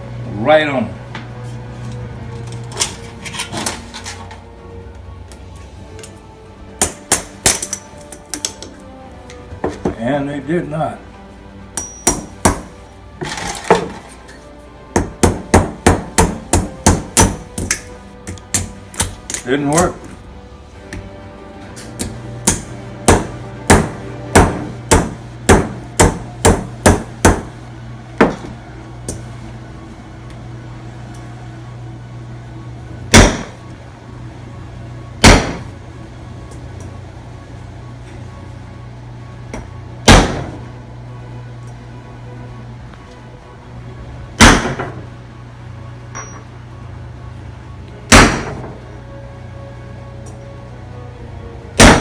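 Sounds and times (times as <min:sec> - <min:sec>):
steady low hum: 0:00.0 - 0:52.0
hammer blows on metal: 0:21.8 - 0:27.5.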